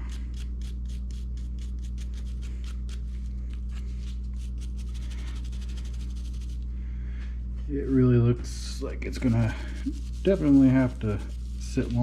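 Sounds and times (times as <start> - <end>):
steady low hum: 0.0 - 12.0
nylon brush scrubbing metal: 9.0 - 12.0.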